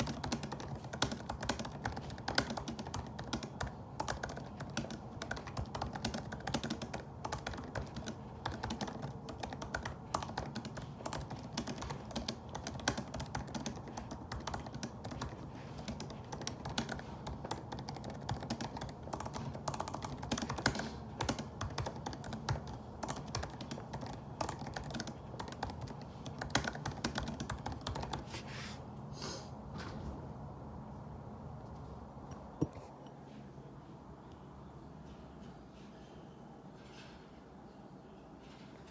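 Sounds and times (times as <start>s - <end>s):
fast laptop keyboard typing: 0.0s - 28.3s.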